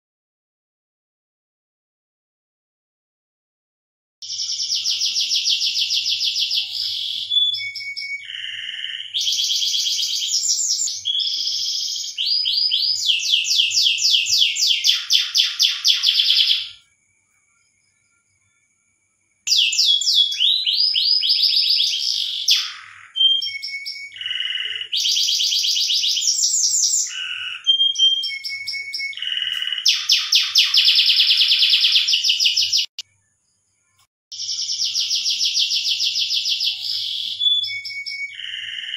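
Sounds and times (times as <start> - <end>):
canary singing: 4.2 - 16.8, 19.5 - 33.0, 34.3 - 38.9.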